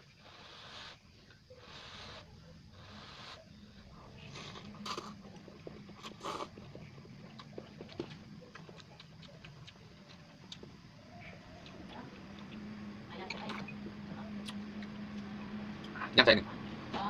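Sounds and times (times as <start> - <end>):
low hum: 3.4 - 17.0
chewing and mouth noises: 4.2 - 12.6.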